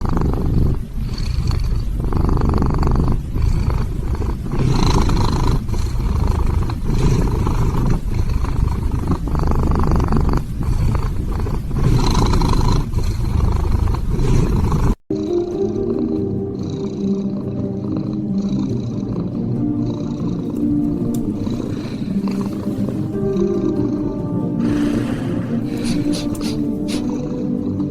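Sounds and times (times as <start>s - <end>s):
cat snoring: 0.0s - 15.4s, 16.0s - 27.9s
steady sustained tones: 15.1s - 27.9s.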